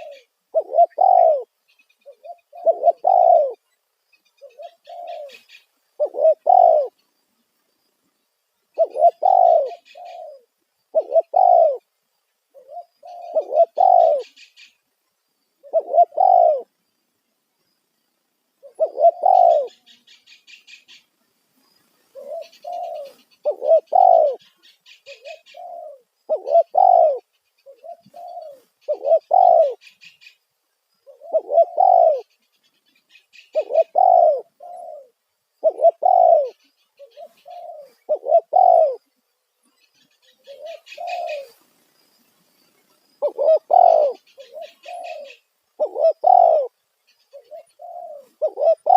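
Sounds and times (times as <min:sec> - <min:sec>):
dove cooing: 0:00.0 - 0:03.7, 0:04.4 - 0:07.0, 0:08.7 - 0:11.9, 0:12.5 - 0:14.7, 0:15.6 - 0:16.8, 0:18.6 - 0:21.0, 0:22.1 - 0:30.3, 0:31.0 - 0:32.3, 0:33.3 - 0:39.1, 0:40.0 - 0:41.6, 0:43.2 - 0:48.9.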